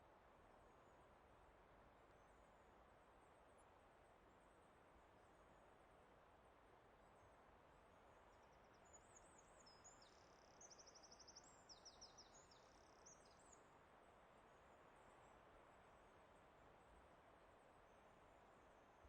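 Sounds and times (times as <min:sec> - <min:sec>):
songbird singing: 0:08.2 - 0:13.7.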